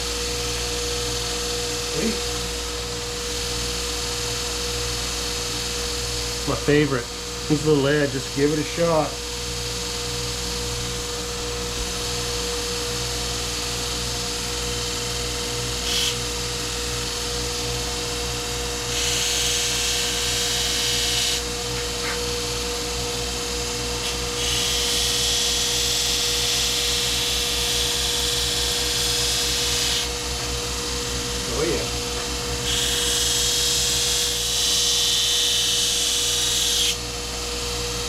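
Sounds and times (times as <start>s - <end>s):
belt grinder humming: 24.0s - 35.0s.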